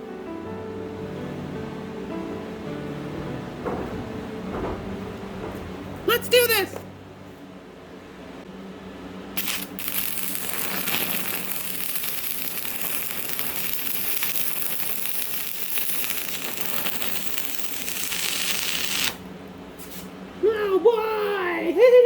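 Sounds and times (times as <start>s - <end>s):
welding arc crackling: 9.4s - 19.3s.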